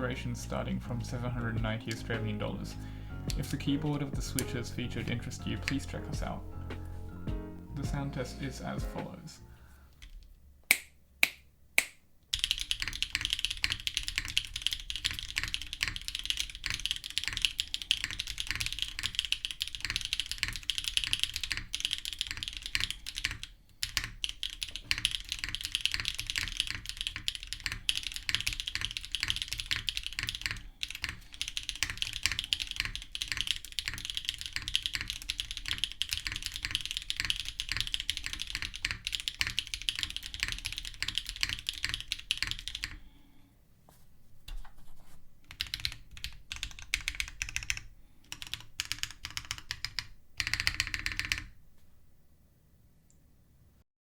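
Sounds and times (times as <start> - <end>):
mechanical keyboard typing: 3.3 - 6.4, 12.3 - 43.1, 45.5 - 51.6.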